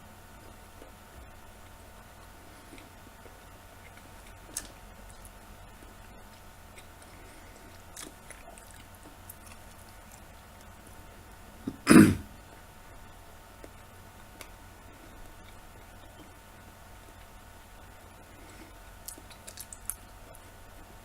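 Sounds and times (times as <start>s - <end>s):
person chewing: 2.5s - 11.0s, 18.4s - 20.4s
person coughing or burping: 11.7s - 12.3s.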